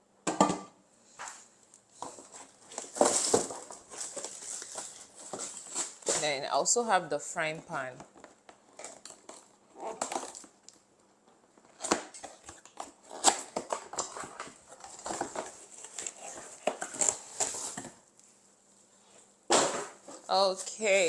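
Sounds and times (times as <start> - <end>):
packaging crinkling and rustling: 1.8 - 6.3, 8.0 - 18.2.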